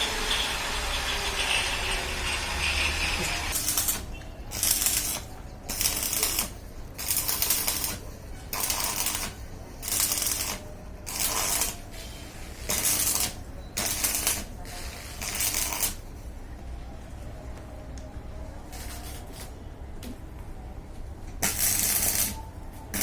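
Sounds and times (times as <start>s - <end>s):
hand tool rasping on metal: 0.0s - 3.6s.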